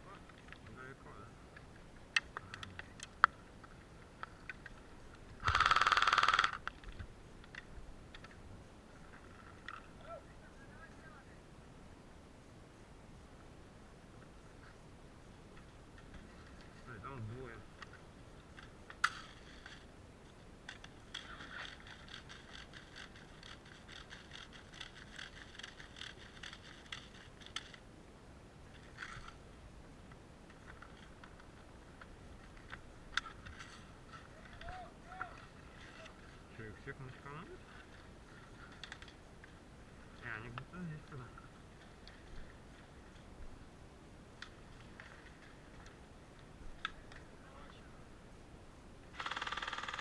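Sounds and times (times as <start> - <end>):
light clicks and ticks: 1.5 - 8.4
airsoft gun full-auto burst: 5.4 - 6.6, 49.2 - 50.0
rustling and scraping: 17.8 - 27.8, 30.5 - 43.3.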